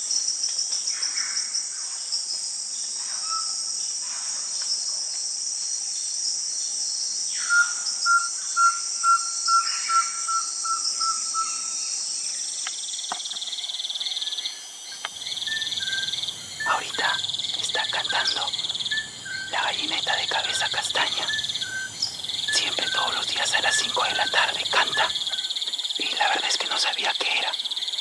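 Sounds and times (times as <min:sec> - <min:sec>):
insect chorus drone: 0:00.0 - 0:28.0
low pulsing insect trill: 0:03.4 - 0:28.0
bird whistling notes: 0:15.2 - 0:25.6.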